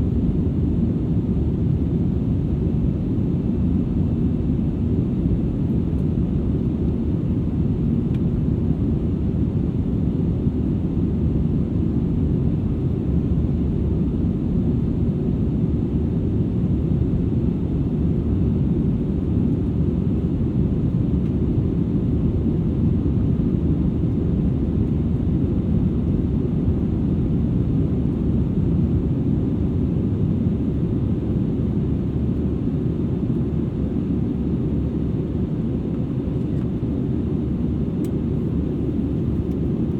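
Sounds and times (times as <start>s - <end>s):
airplane cabin engine rumble: 15.8s - 39.9s.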